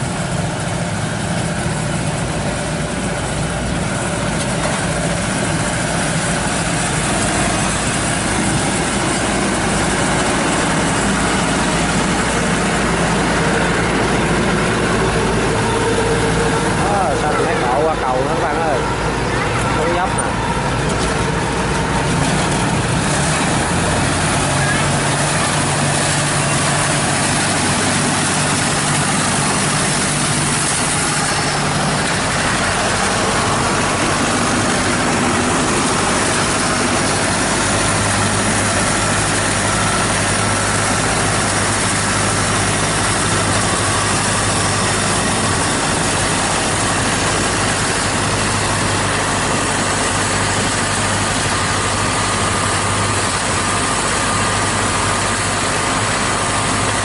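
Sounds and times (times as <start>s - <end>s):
farm machinery engine running: 0.0s - 57.0s.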